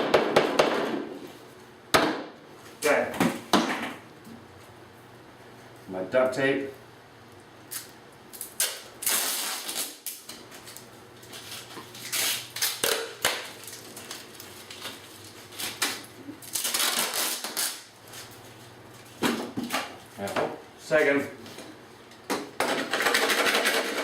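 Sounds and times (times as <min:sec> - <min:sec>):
duct tape ripping: 0:07.7 - 0:18.3.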